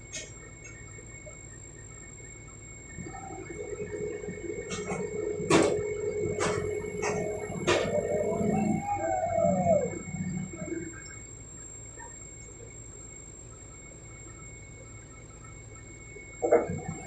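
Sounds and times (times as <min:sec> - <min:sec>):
faint low hum: 0:00.0 - 0:17.0
machinery squeal: 0:03.0 - 0:11.2
machinery knock: 0:04.6 - 0:08.8.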